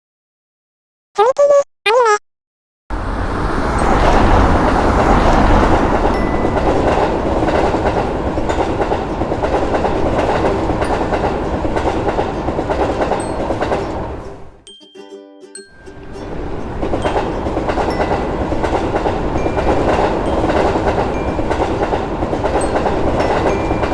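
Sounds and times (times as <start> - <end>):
wheels clattering on track: 2.9 - 14.2, 16.4 - 23.9
train passing at speed: 2.9 - 14.5, 15.8 - 23.9.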